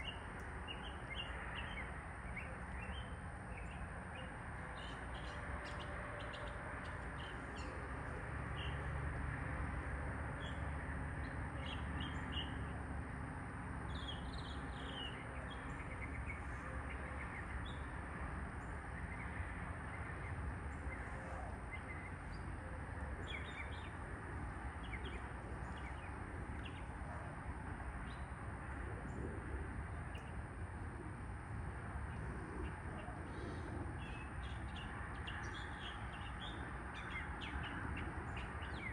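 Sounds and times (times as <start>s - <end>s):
low outdoor background hum: 0.0s - 38.9s
small birds chirping: 18.6s - 28.4s, 32.1s - 38.9s.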